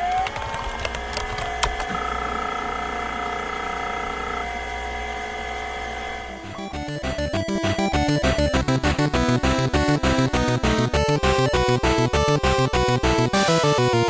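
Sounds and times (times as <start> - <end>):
small electric motors whining: 0.0 - 6.8.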